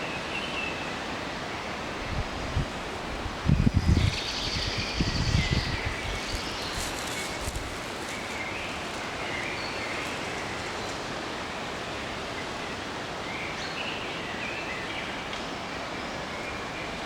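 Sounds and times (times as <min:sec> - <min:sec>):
small birds chirping: 0:03.6 - 0:11.2.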